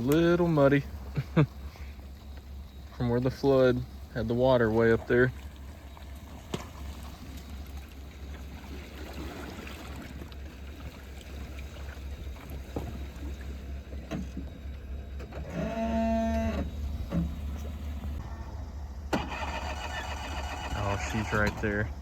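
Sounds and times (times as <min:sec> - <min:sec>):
engine droning: 0:00.0 - 0:22.0.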